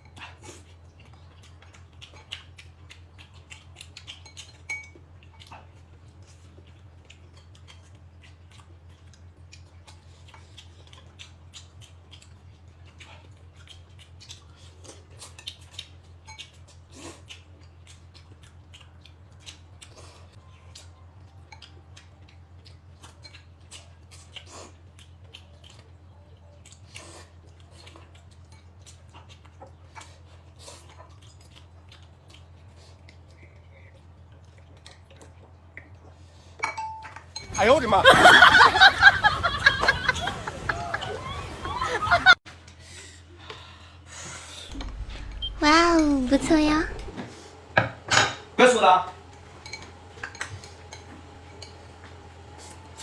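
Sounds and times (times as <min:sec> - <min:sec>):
utensils clinking on dishes: 0:04.1 - 0:05.0, 0:36.6 - 0:37.9, 0:49.6 - 0:51.8
low steady hum: 0:44.7 - 0:53.0.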